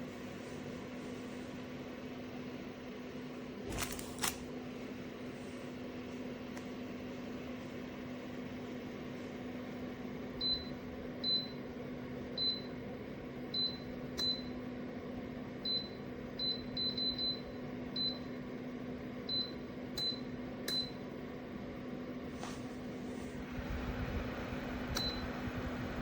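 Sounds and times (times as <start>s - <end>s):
space heater fan humming: 0.0s - 26.0s.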